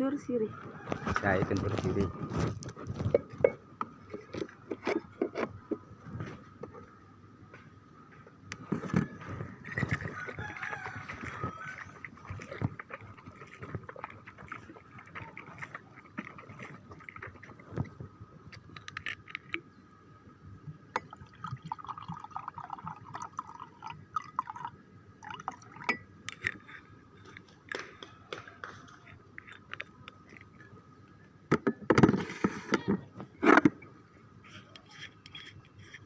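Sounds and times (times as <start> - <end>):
liquid pouring into a glass: 21.0 - 26.0.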